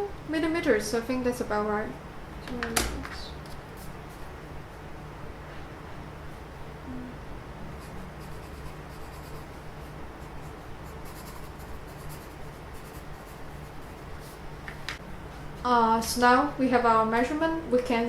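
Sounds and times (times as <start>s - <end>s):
steady low hum: 0.0s - 18.0s
pen scratching on paper: 7.8s - 14.4s.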